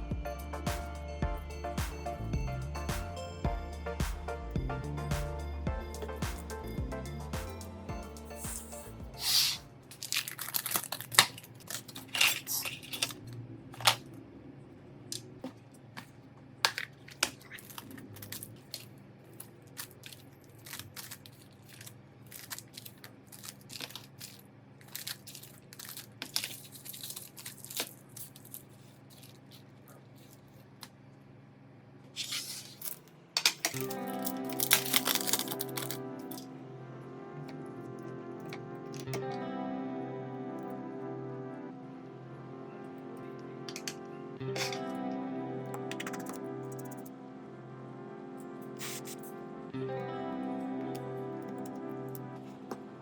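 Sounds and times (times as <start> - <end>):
music: 0.0 - 9.8, 33.8 - 53.0
hand tools clicking and scraping: 32.2 - 36.5, 43.7 - 44.0, 44.6 - 44.9, 45.8 - 47.1, 48.7 - 49.4.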